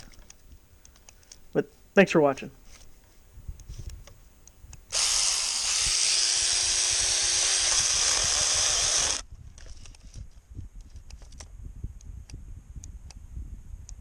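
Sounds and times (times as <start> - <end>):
electric chainsaw running: 4.9 - 9.3.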